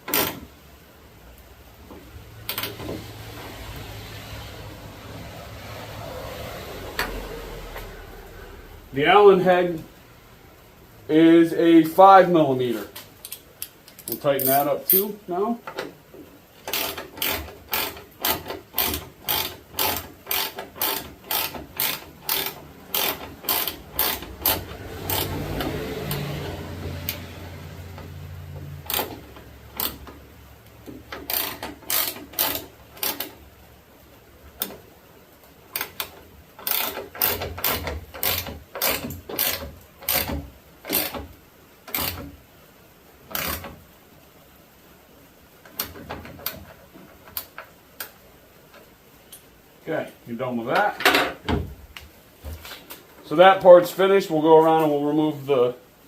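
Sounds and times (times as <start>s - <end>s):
hand ratchet clicking: 0.0s - 0.5s, 16.6s - 33.4s, 35.7s - 42.4s, 43.3s - 43.8s.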